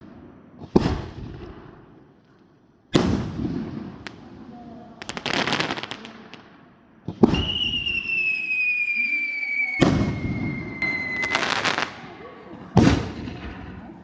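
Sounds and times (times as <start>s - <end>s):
crackling firework pops: 0.0s - 4.4s, 5.0s - 9.1s, 9.7s - 12.1s
fireworks booming with echo: 0.0s - 14.0s.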